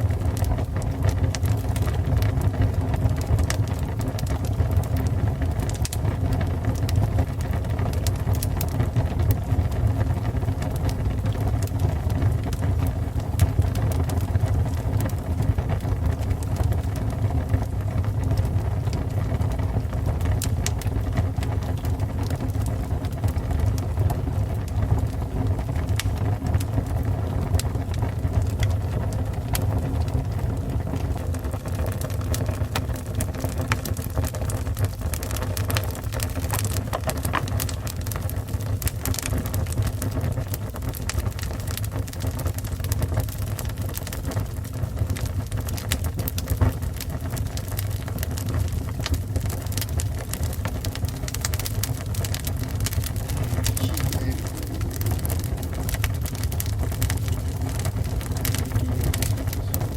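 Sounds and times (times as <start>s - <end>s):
fire crackling and popping: 0.0s - 59.9s
fire roaring: 0.0s - 59.9s.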